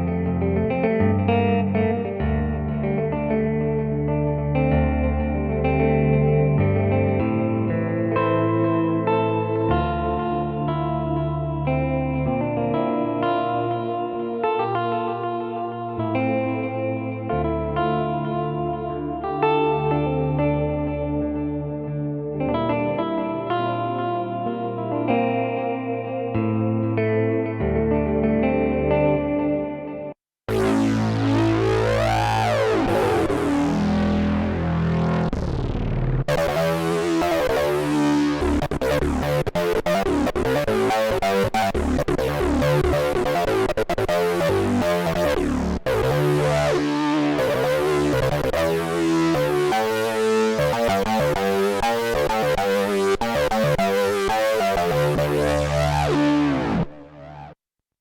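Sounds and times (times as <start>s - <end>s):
synthesizer sustained chords: 30.5s - 57.6s.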